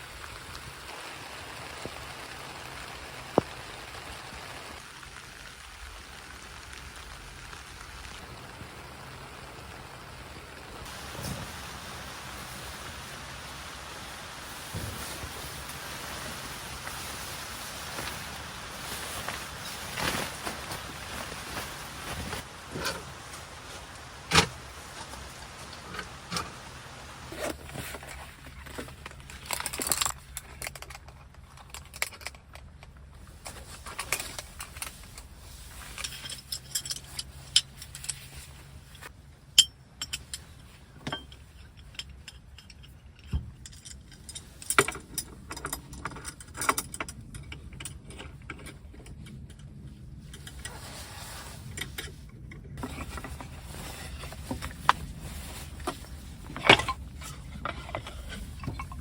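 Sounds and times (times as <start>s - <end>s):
metallic clinks and rattles: 35.8s - 38.4s.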